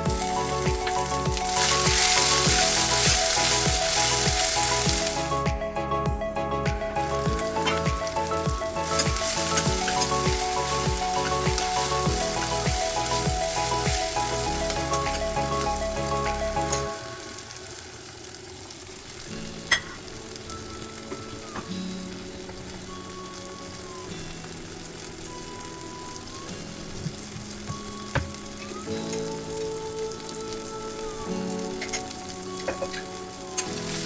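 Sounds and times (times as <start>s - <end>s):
music with a steady beat: 0.0s - 17.0s
food sizzling in a pan: 0.0s - 34.0s.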